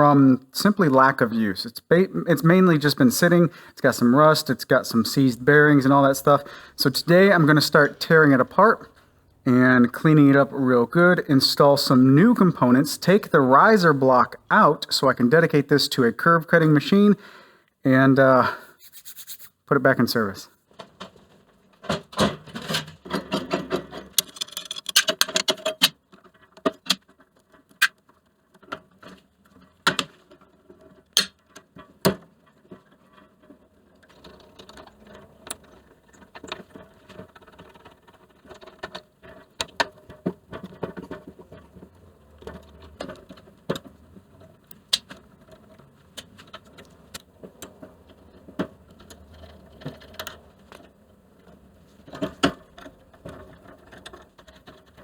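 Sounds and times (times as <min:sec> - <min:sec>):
rapid scratchy clicking: 0:18.8 - 0:19.6
metal parts clinking and knocking: 0:22.6 - 0:26.0.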